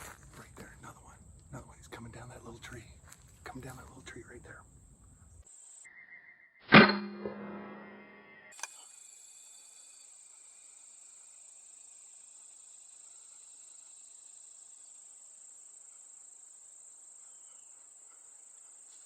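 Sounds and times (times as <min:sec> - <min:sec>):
high-pitched insect drone: 0:08.5 - 0:17.9.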